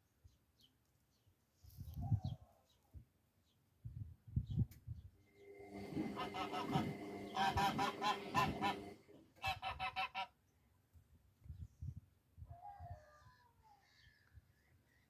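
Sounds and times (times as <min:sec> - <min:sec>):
honking bird calls: 0:05.7 - 0:10.4.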